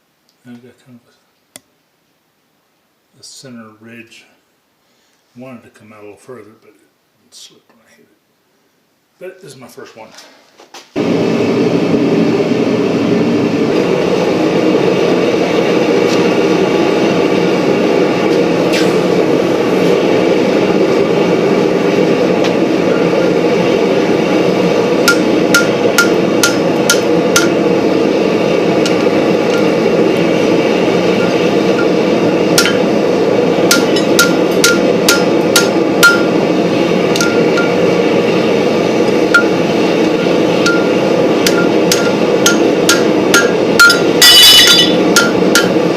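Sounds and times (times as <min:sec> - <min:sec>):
loud rushing noise: 0:11.0 - 0:45.9
hammer ringing on anvil: 0:25.1 - 0:27.6, 0:32.6 - 0:32.9, 0:33.7 - 0:36.3, 0:37.2 - 0:37.8, 0:40.6 - 0:45.8.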